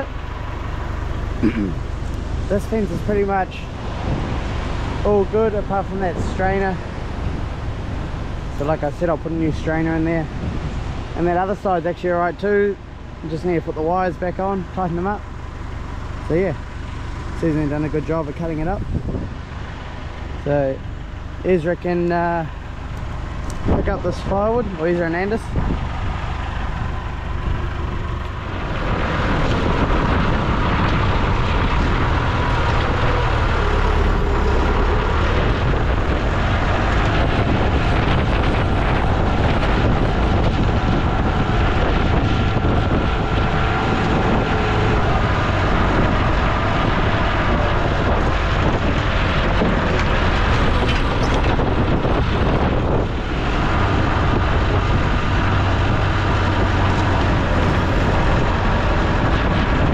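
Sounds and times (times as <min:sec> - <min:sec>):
motor vehicle engine rumble: 0:00.0 - 0:59.9.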